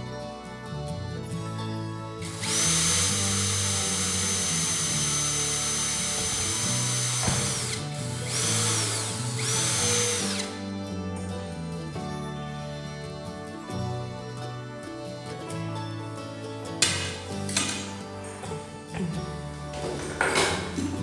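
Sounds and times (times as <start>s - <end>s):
background music: 0.0s - 21.0s
high-speed power tool whining: 2.2s - 10.7s.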